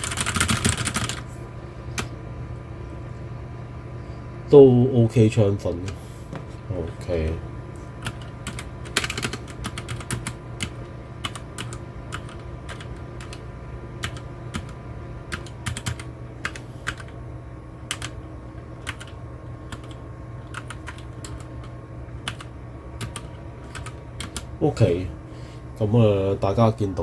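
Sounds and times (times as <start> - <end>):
mechanical keyboard typing: 0.0 - 1.2, 8.0 - 13.4, 14.0 - 17.2, 17.9 - 18.2, 18.8 - 24.5.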